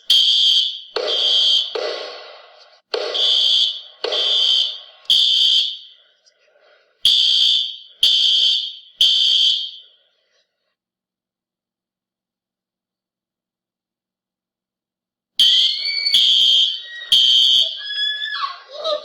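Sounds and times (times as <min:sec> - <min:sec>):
fire alarm horn buzzing: 0:00.0 - 0:01.8, 0:03.0 - 0:06.0, 0:07.0 - 0:10.0, 0:15.4 - 0:18.2
alarm click: 0:00.2 - 0:06.4.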